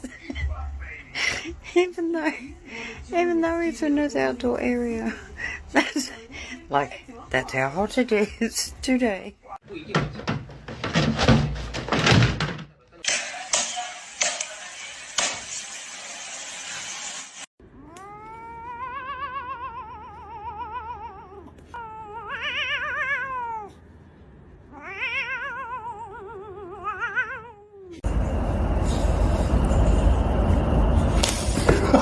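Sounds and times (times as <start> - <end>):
knocks: 9.9 - 12.7
cat yowling: 17.8 - 23.8, 24.7 - 28.0.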